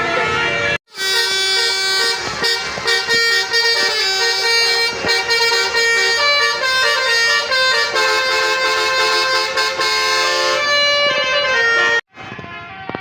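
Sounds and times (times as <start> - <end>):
bus multi-tone horn playing tune: 0.0 - 13.0.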